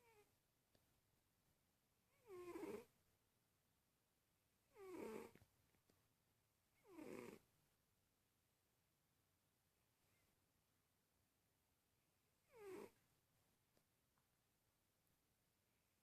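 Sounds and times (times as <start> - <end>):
cat snoring: 0.0 - 0.3, 2.1 - 2.9, 4.7 - 5.4, 6.8 - 7.4, 12.4 - 13.0.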